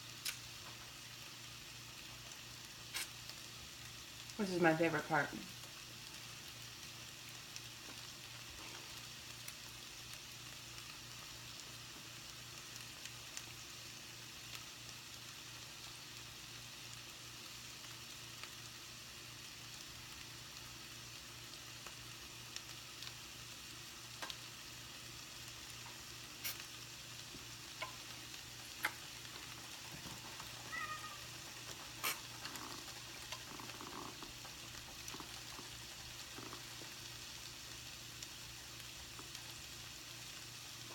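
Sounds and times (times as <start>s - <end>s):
fruit sizzling in a pan: 0.0s - 40.9s
sharp pops and clicks: 0.2s - 0.8s, 2.9s - 3.2s, 24.2s - 24.5s, 25.7s - 37.0s.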